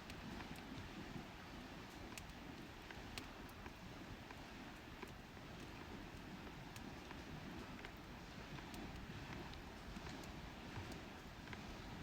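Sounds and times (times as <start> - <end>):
campfire crackling: 0.0 - 12.0.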